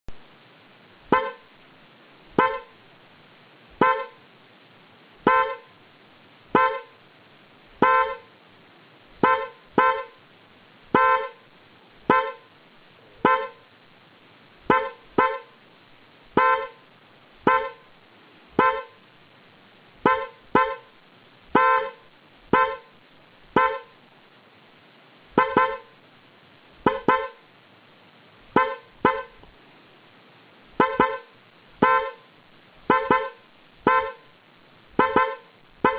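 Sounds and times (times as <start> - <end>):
car horn honking: 1.1 - 1.5, 2.4 - 2.8, 3.8 - 4.2, 5.2 - 5.8, 6.5 - 7.0, 7.8 - 8.3, 9.2 - 10.2, 10.9 - 11.4, 12.1 - 12.5, 13.2 - 13.7, 14.7 - 15.6, 16.4 - 16.8, 17.4 - 17.9, 18.6 - 19.0, 20.0 - 20.9, 21.5 - 23.0, 23.6 - 24.0, 25.4 - 26.0, 26.8 - 27.4, 28.6 - 29.4, 30.8 - 32.3, 32.9 - 34.3, 35.0 - 35.9.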